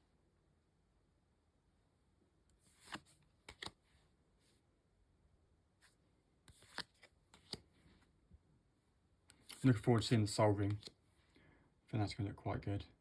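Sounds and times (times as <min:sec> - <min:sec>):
playing cards snapping and swishing: 0:02.8 - 0:03.8, 0:06.5 - 0:07.7.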